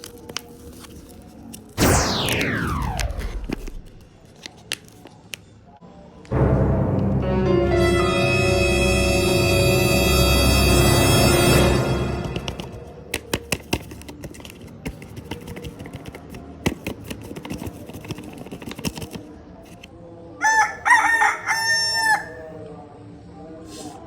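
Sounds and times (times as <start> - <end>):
music: 6.3 - 13.3
rooster crowing: 20.4 - 22.6.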